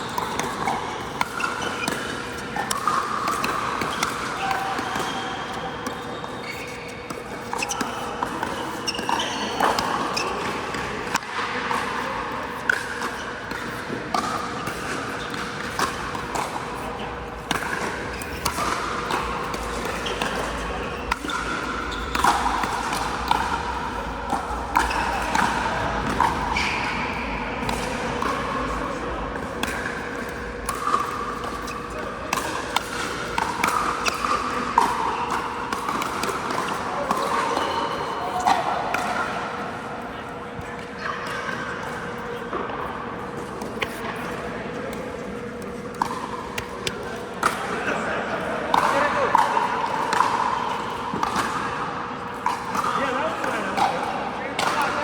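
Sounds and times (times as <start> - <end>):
players' voices: 14.4 - 41.2, 43.6 - 50.7, 52.8 - 55.0.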